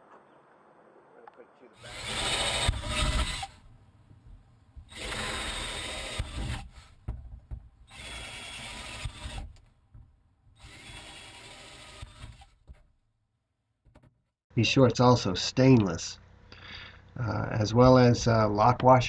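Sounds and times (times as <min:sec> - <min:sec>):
power drill drilling plastic: 0:01.8 - 0:03.6, 0:04.9 - 0:07.0, 0:07.9 - 0:09.7, 0:10.6 - 0:12.6.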